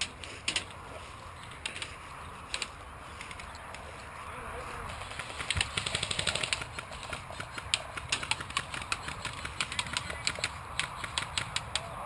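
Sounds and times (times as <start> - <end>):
airsoft guns firing: 5.0 - 11.9.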